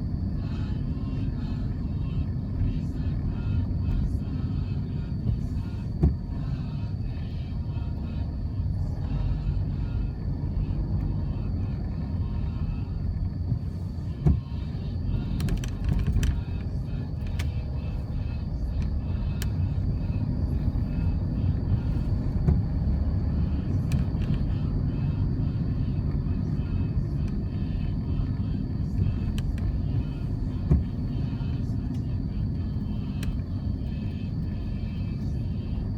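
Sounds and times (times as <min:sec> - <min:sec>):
traffic rumble: 0:00.0 - 0:35.9.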